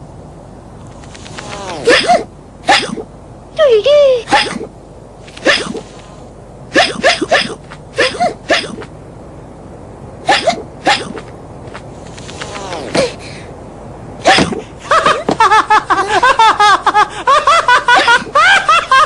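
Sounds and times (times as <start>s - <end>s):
cartoon character hiccuping: 1.5s - 3.0s, 4.2s - 4.7s, 6.7s - 8.9s, 10.2s - 11.3s.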